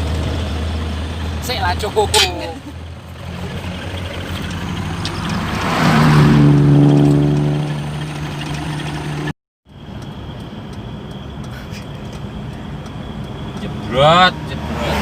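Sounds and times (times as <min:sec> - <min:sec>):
engine and road noise: 0:00.0 - 0:15.0
heavy vehicle passing: 0:01.9 - 0:09.3, 0:13.8 - 0:15.0.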